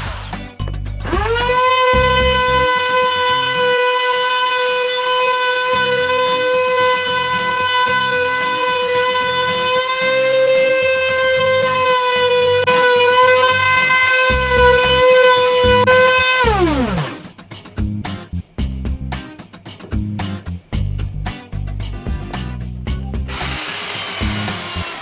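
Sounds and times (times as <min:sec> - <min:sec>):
circular saw whining: 0:00.0 - 0:17.4, 0:23.3 - 0:25.0
background music with a beat: 0:17.2 - 0:23.3.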